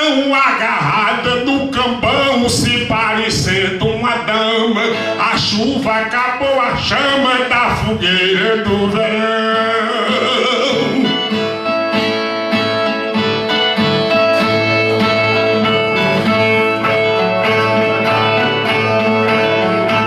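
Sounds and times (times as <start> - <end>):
steel-strung guitar strummed and plucked: 0.0 - 20.0.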